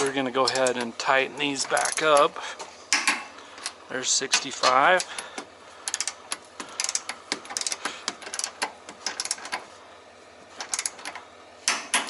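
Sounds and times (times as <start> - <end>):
torque wrench ratchet clicking: 1.6 - 2.2, 5.0 - 9.6, 10.6 - 11.8.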